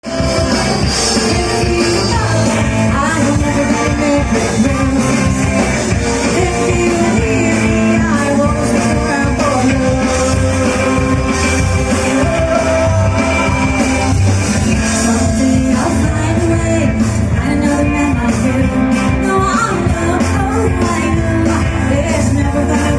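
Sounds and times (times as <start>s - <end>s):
person singing: 0.0s - 22.9s
rock band playing: 0.0s - 22.9s.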